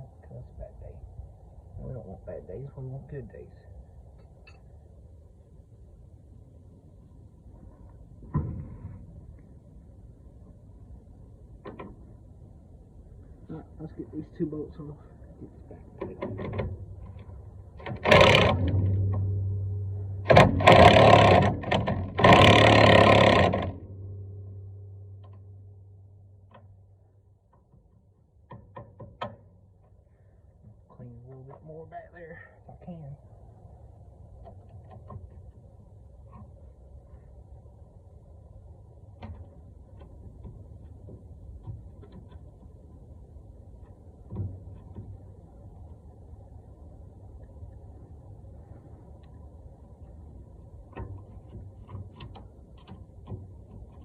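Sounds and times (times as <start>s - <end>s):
low background rumble: 0.0s - 54.0s
low hum: 0.0s - 54.0s
impact wrench bursts: 20.2s - 23.7s.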